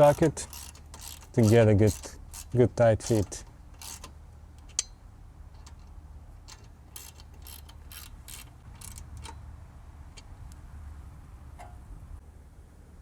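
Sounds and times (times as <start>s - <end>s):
socket ratchet clicking: 0.0s - 5.0s, 5.6s - 9.4s.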